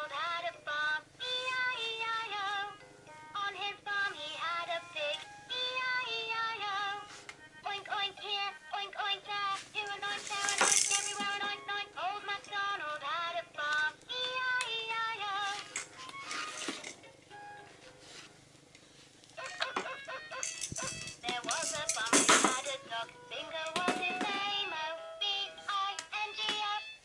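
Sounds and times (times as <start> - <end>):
toy book playing a song: 19.7 - 27.0.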